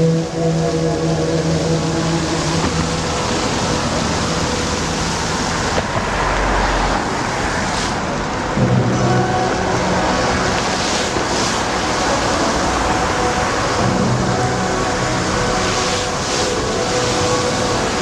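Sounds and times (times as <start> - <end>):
fountain water jets hissing: 0.0 - 18.0.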